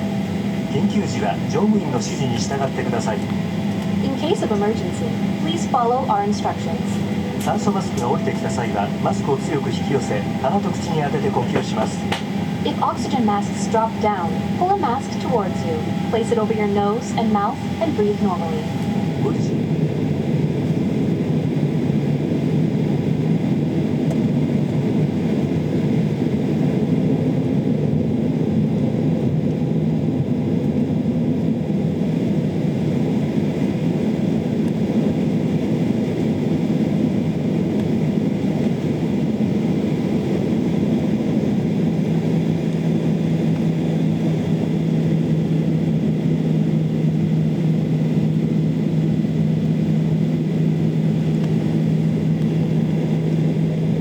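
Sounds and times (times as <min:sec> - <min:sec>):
low steady hum: 0:00.0 - 0:20.8
jet engine and airflow rumble: 0:00.0 - 0:54.0.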